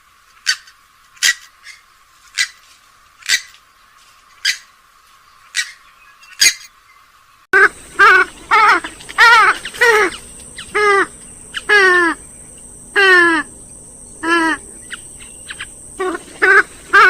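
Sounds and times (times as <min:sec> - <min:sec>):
rail bird calling: 0:00.4 - 0:04.7, 0:05.3 - 0:06.8, 0:07.6 - 0:17.0
faint steady hum: 0:06.7 - 0:17.0.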